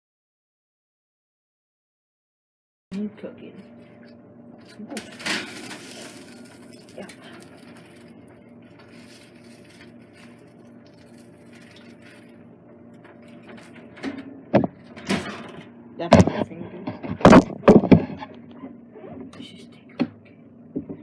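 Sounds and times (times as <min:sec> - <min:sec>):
steady low hum: 0:02.9 - 0:21.0
foil crinkling: 0:04.6 - 0:13.9.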